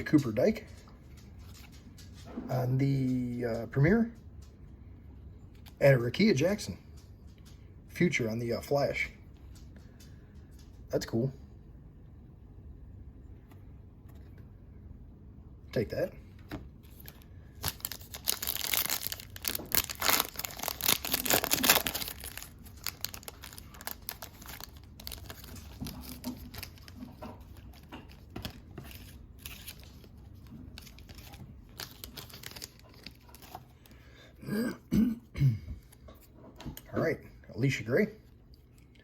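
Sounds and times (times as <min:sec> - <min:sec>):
cards rustling and clicking: 0:16.4 - 0:34.0
wrapper tearing and crinkling: 0:16.9 - 0:33.6.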